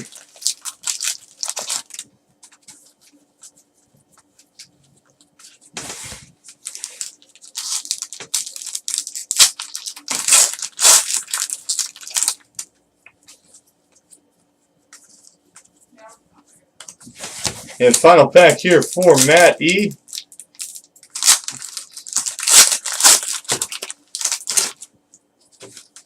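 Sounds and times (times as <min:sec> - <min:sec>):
wrappers ripping and crinkling: 0:00.0 - 0:03.1, 0:05.4 - 0:12.7, 0:17.8 - 0:24.9.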